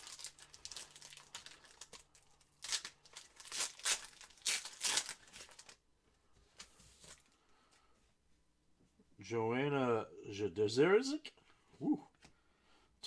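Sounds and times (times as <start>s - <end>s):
card pack wrapper tearing and crinkling: 0.0s - 5.8s.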